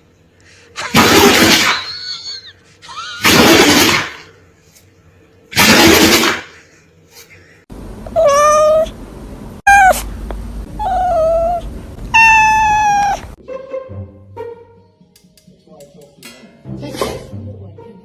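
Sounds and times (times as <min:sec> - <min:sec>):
cat meowing: 0:08.2 - 0:08.9, 0:09.7 - 0:10.1, 0:10.8 - 0:13.4.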